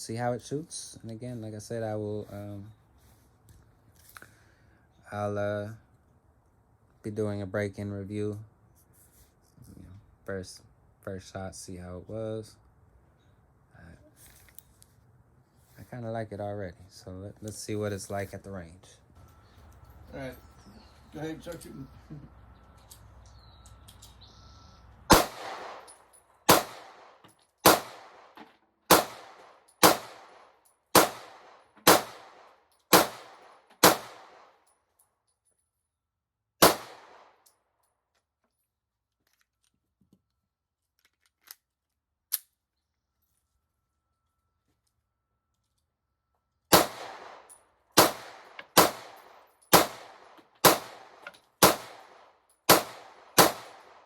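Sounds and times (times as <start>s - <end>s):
pistol shots: 25.1s - 34.6s, 36.6s - 37.4s, 46.7s - 54.0s.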